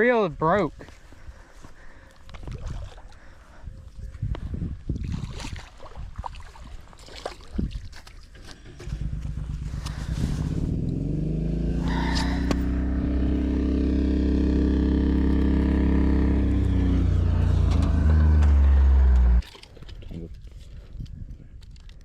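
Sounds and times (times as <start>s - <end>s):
engine running: 8.4s - 19.4s.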